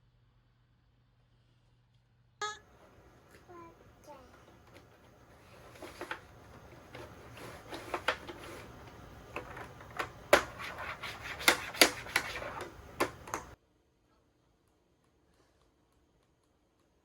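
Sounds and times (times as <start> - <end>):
irregular sharp clicks and taps: 4.4 - 13.6.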